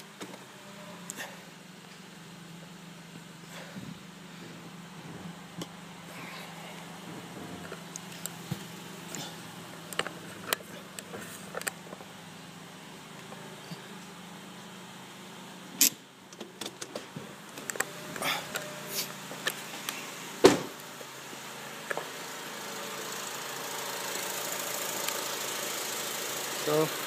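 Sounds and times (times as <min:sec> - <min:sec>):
car engine idling: 0:00.0 - 0:27.0
loud thump: 0:20.4 - 0:20.8.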